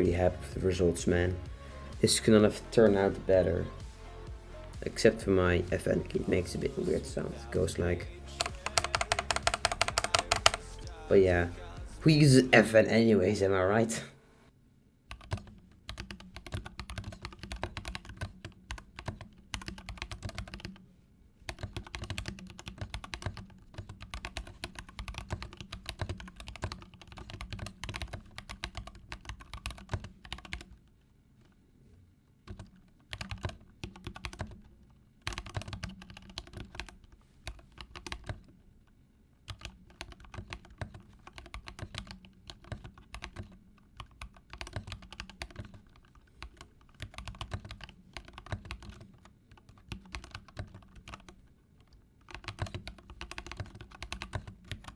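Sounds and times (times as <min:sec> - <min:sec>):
mechanical keyboard key clicks: 0:08.4 - 0:10.7, 0:15.1 - 0:20.8.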